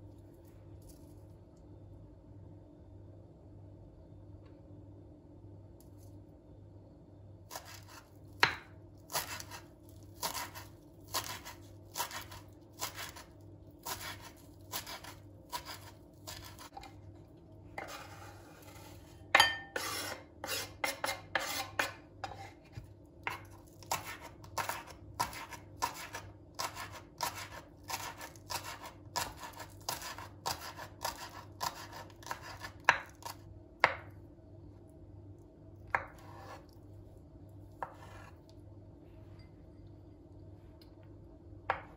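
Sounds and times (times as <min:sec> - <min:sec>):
knife chopping on cutting board: 0:07.5 - 0:09.6, 0:10.2 - 0:16.9, 0:17.8 - 0:34.1, 0:35.9 - 0:36.6, 0:37.8 - 0:38.3
knife scraping board: 0:07.5 - 0:13.2, 0:13.8 - 0:16.9, 0:17.8 - 0:33.4, 0:35.9 - 0:36.7, 0:37.8 - 0:38.4.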